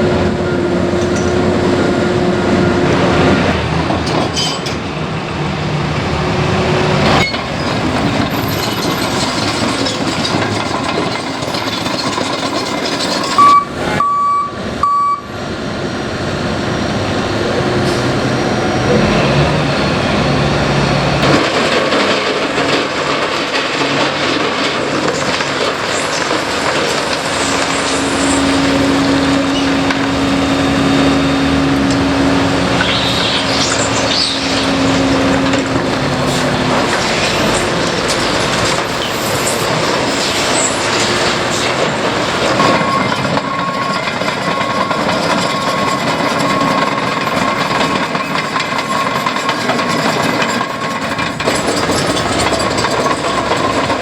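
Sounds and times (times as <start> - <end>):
heavy machinery diesel engines: 0.0 - 54.0
steady engine hum: 13.2 - 22.4, 24.4 - 42.7
backup alarm beeping: 13.4 - 15.3.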